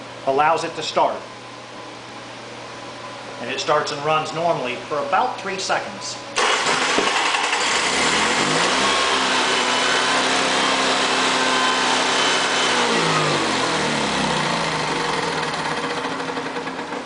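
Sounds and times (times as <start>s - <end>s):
generator engine starting and stopping: 6.4s - 17.0s.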